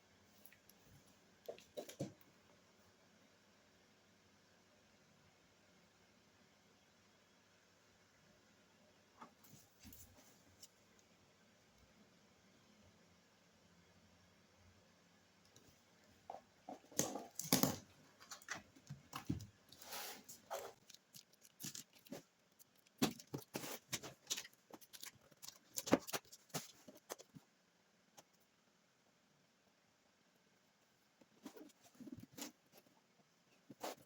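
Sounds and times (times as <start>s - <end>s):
hands handling toy packaging: 19.1s - 27.3s.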